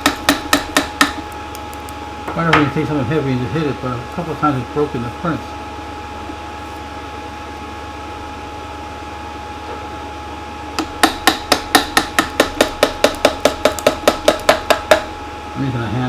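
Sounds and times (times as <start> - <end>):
sharp rapid tapping: 0.0 - 2.0, 10.8 - 15.1
steady low hum: 0.0 - 16.0.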